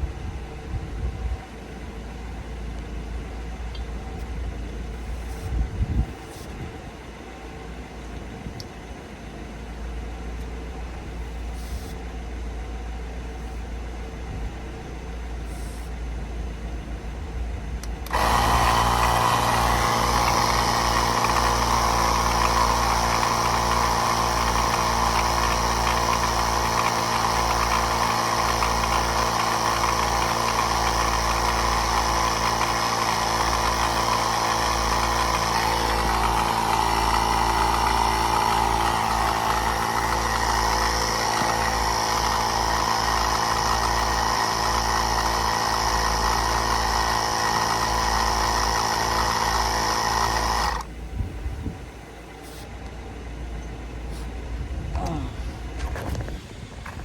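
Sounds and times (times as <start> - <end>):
wind rumble on microphone: 0.0 - 1.4, 5.4 - 7.0, 51.0 - 52.0
air compressor buzzing: 4.9 - 6.7, 17.8 - 51.8, 53.9 - 57.0.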